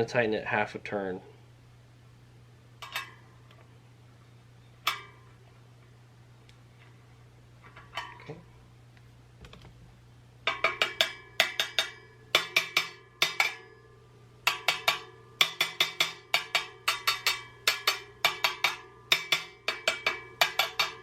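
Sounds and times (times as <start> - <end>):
metal spokes pinging when tapped: 4.8 - 5.2, 10.4 - 13.8, 14.4 - 21.0.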